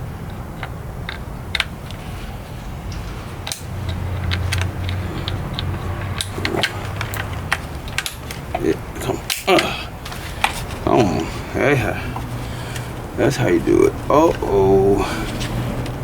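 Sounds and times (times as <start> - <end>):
steady low hum: 0.0 - 16.0
plastic connectors clicking: 2.9 - 10.8.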